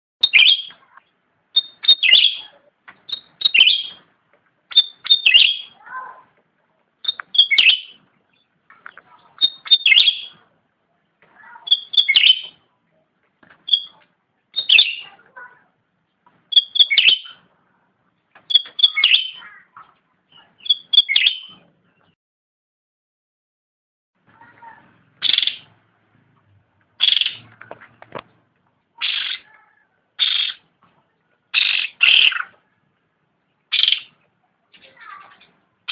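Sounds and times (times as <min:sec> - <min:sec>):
bulbul singing: 0:00.2 - 0:04.1, 0:04.7 - 0:06.1, 0:07.0 - 0:10.5, 0:11.4 - 0:12.7, 0:13.6 - 0:15.5, 0:16.4 - 0:17.5, 0:18.4 - 0:19.6, 0:20.3 - 0:22.2, 0:24.4 - 0:25.8, 0:27.0 - 0:27.6, 0:29.0 - 0:30.7, 0:31.6 - 0:32.7, 0:33.5 - 0:34.2.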